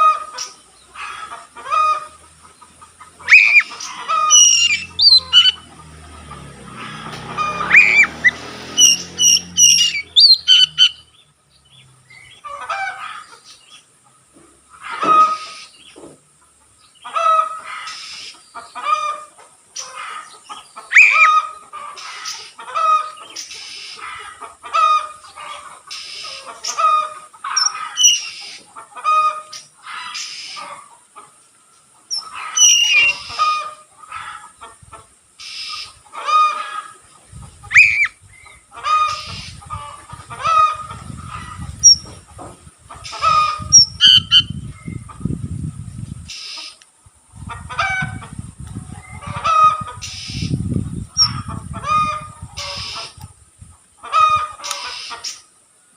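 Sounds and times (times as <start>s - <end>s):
bird singing: 3.1s - 5.9s, 6.8s - 12.4s, 19.8s - 22.4s, 27.6s - 28.6s, 32.1s - 33.4s, 37.7s - 39.6s, 41.8s - 42.1s, 43.3s - 45.1s.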